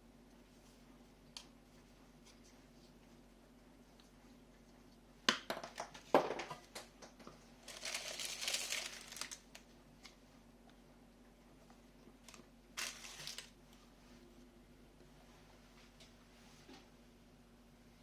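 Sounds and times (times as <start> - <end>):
plastic crinkling: 7.6 - 9.6, 12.2 - 13.6.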